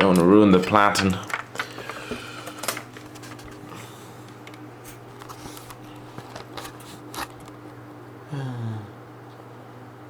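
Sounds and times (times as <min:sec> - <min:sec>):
typewriter clicks and knocks: 0:00.0 - 0:01.7
steady low hum: 0:00.0 - 0:10.0.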